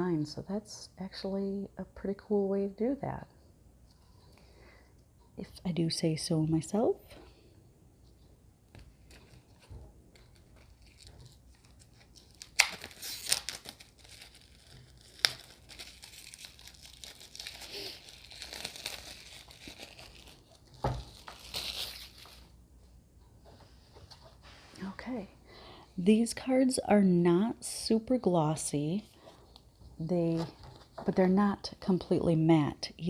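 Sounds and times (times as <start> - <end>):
plastic wrap crinkling: 8.7 - 22.6.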